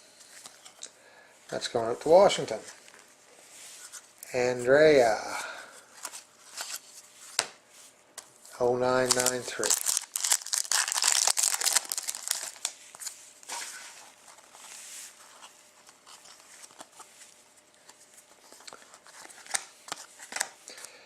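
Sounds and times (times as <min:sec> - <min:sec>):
cards rustling and sliding: 0:05.8 - 0:20.6
card pack wrapper crinkling: 0:08.9 - 0:14.6, 0:17.8 - 0:20.6.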